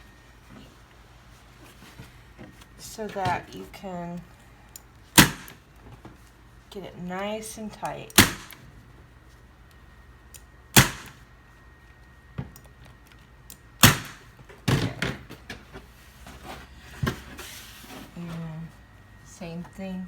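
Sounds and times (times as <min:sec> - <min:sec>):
staple gun firing: 0:05.2 - 0:05.6, 0:08.1 - 0:08.6, 0:10.8 - 0:11.2, 0:13.8 - 0:14.3.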